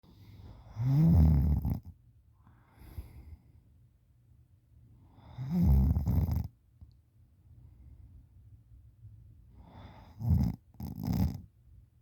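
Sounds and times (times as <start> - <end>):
soft breath out: 2.4 - 3.7.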